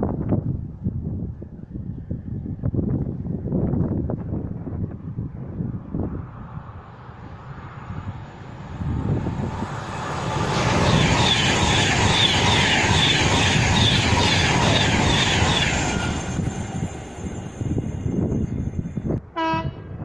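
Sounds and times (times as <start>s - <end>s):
train passing: 3.5s - 20.0s
train wheels clattering: 10.3s - 18.2s.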